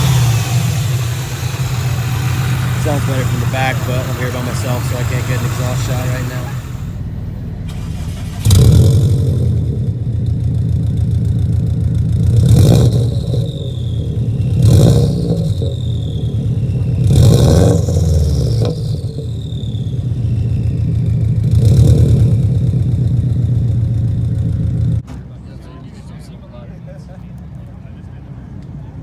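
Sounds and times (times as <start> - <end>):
turbo whistle: 0.0 - 8.9, 12.7 - 21.6
car engine idling and revving: 0.0 - 29.0.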